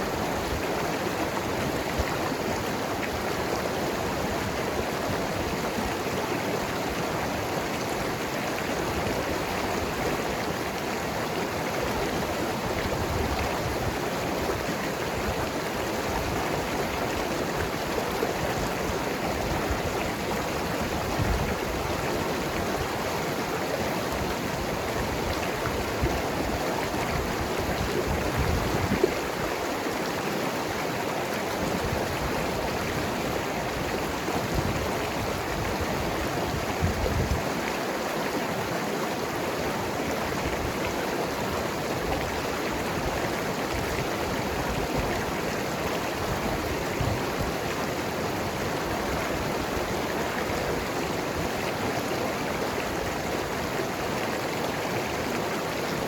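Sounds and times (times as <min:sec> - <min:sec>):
river flowing over rocks: 0:00.0 - 0:56.0.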